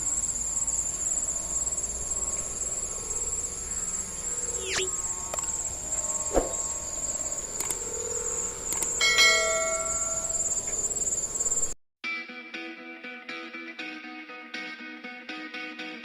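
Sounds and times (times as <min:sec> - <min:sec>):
kites humming high whine: 0:00.0 - 0:11.8
ringing bell-like tones: 0:00.9 - 0:11.8.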